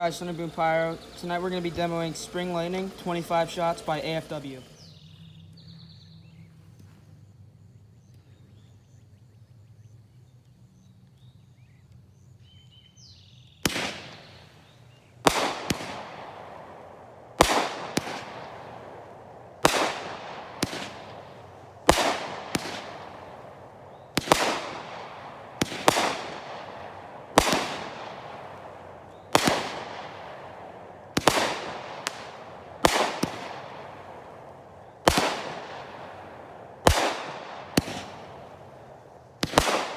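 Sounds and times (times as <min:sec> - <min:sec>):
firework bangs with hiss: 0:00.0 - 0:05.0, 0:13.6 - 0:39.9.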